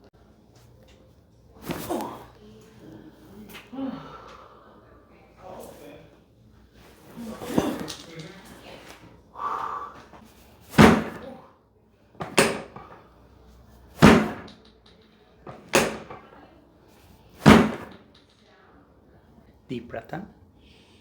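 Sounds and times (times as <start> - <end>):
sharp thumps: 10.7 - 11.3, 12.2 - 13.0, 14.0 - 14.6, 15.5 - 16.3, 17.4 - 18.0.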